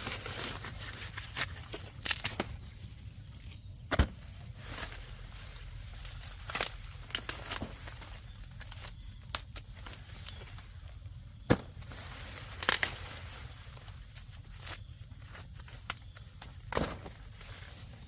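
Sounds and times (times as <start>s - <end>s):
dry plants snapping and crackling: 0.0s - 2.7s, 5.7s - 10.6s, 11.4s - 17.6s
insects droning: 0.0s - 18.0s.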